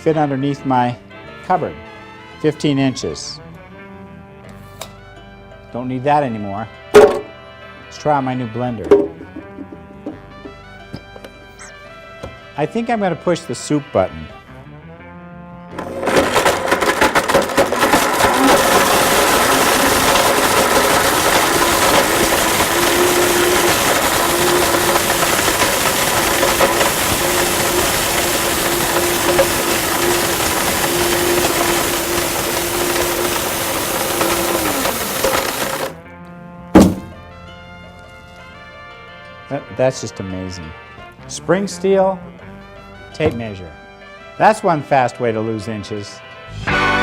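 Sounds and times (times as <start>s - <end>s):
sharp knock: 7.0s - 7.3s, 36.8s - 37.2s
blender motor running: 15.7s - 36.0s
tape measure grinding clatter: 15.7s - 36.0s.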